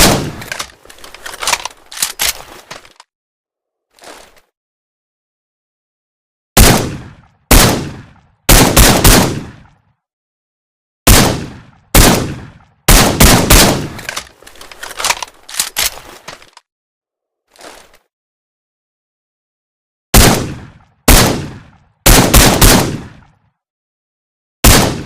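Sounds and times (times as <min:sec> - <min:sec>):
suppressed rifle shots: 0:00.0 - 0:02.4, 0:06.6 - 0:09.7, 0:11.1 - 0:14.3, 0:20.2 - 0:23.2, 0:24.6 - 0:25.0
light clicks and clatter: 0:00.4 - 0:03.1, 0:14.0 - 0:16.7.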